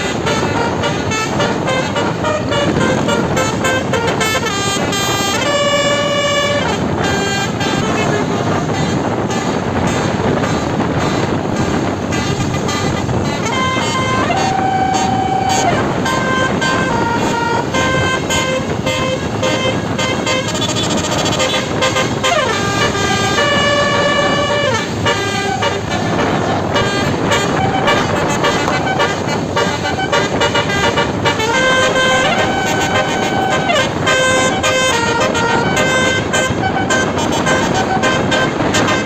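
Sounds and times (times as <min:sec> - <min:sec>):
bus horn playing a tune: 0:00.0 - 0:39.0.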